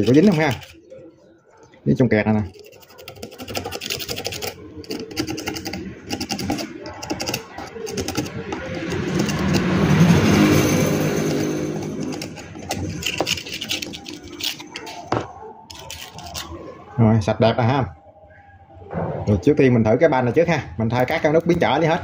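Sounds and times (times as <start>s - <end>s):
scrubbing on a circuit board: 0.0s - 0.8s, 2.5s - 10.0s, 11.9s - 16.5s
passing motor vehicle: 8.3s - 13.0s.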